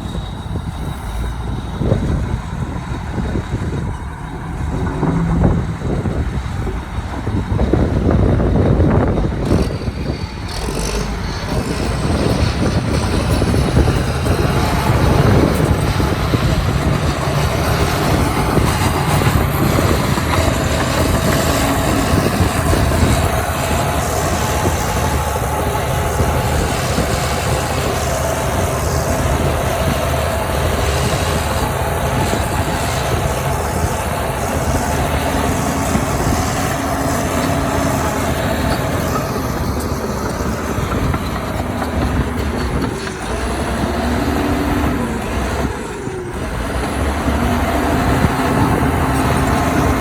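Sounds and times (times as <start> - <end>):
heavy diesel machinery rumbling: 0.0 - 50.0.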